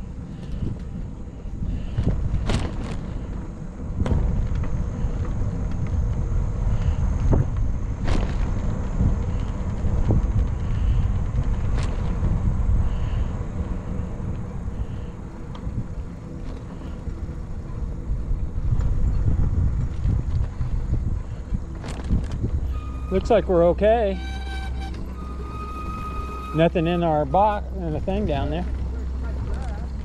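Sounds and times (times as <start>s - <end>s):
wind buffeting microphone: 0.0s - 24.2s
bicycle road rumble: 0.0s - 30.0s
bicycle knocking and rattling: 1.6s - 13.3s, 13.9s - 30.0s.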